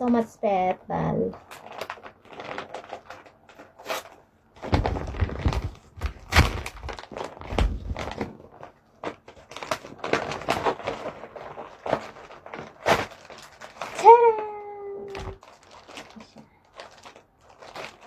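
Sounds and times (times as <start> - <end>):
wrapping paper rustling: 0.0 - 18.0
knocks and thuds: 4.6 - 8.2.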